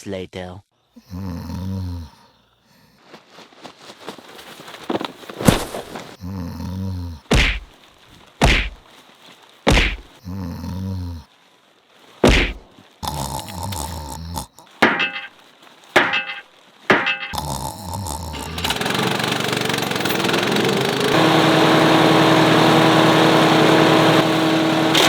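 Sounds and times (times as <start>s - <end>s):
heavy thuds: 7.3s - 7.8s, 8.4s - 8.9s, 9.7s - 10.2s, 12.2s - 12.7s.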